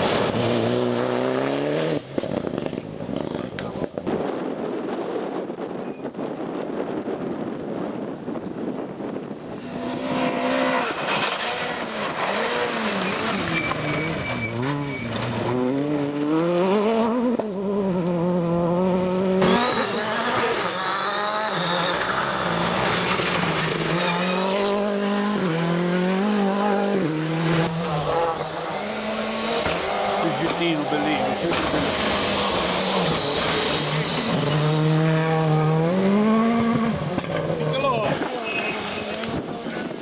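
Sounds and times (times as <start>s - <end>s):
rally car engine revving: 0.0s - 4.2s, 9.5s - 40.0s
wind noise on microphone: 1.9s - 11.3s.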